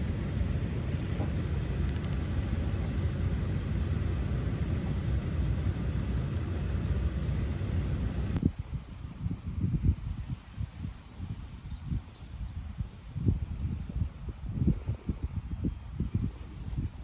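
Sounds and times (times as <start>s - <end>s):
low rumbling outdoor noise: 0.0s - 17.0s
bird chirping: 4.9s - 7.8s.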